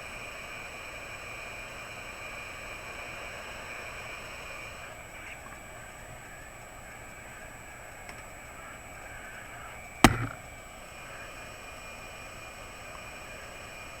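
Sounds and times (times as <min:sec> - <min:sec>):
sharp knock: 0:10.0 - 0:10.5.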